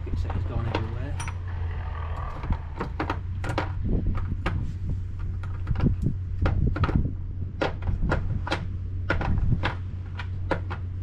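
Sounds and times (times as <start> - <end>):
steady low hum: 0.0 - 11.0
metal tools clinking: 0.6 - 1.5.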